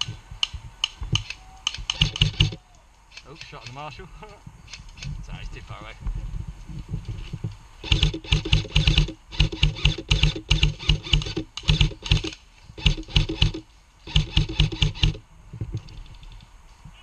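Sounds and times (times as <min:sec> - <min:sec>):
airsoft gun firing rapid clicks: 0:00.0 - 0:03.8, 0:07.8 - 0:15.2.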